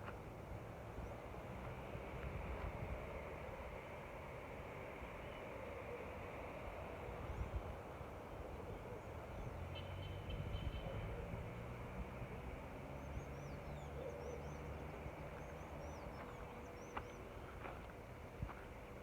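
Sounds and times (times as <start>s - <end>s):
birds chirping: 8.4s - 19.0s.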